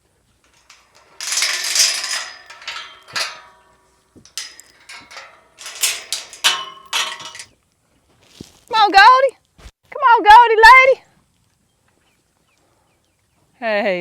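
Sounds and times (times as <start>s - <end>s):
metal clattering and clanking: 0.5s - 7.5s.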